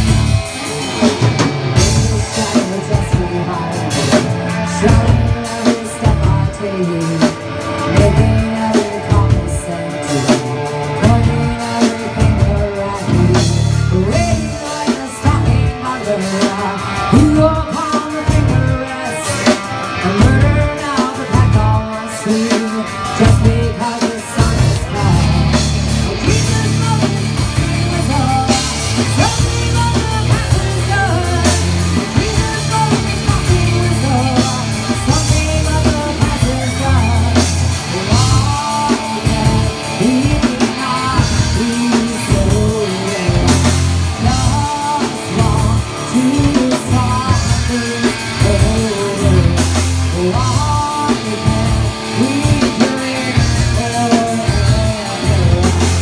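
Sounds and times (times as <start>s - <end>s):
bass guitar: 0.0s - 56.0s
distorted guitars: 0.0s - 56.0s
drum kit: 0.0s - 56.0s
person singing: 0.0s - 56.0s.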